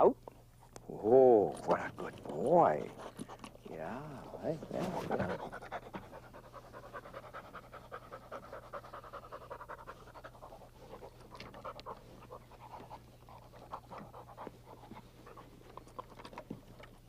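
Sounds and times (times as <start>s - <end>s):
dog panting: 1.5s - 17.0s.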